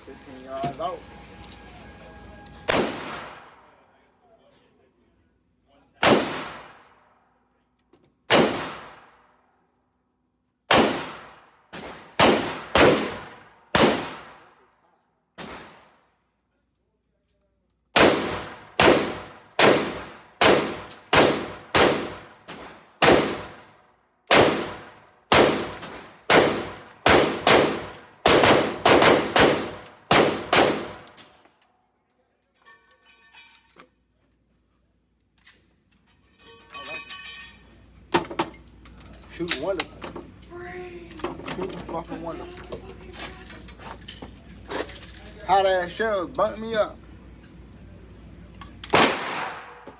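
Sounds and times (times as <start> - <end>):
gunshots with echo: 49.0 - 49.8.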